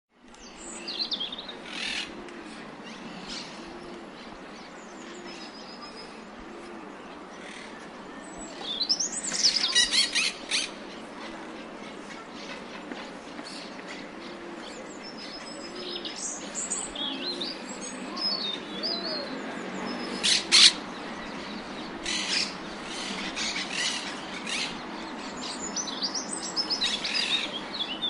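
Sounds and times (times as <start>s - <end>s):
steady outdoor hiss: 0.1s - 28.0s
robin singing: 0.4s - 2.1s, 13.5s - 28.0s
parakeets calling: 20.1s - 20.8s.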